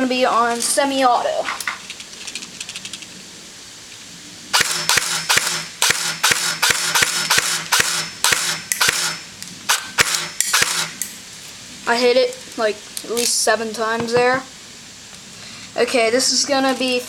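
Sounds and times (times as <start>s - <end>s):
airsoft rifle shots: 4.5s - 11.1s.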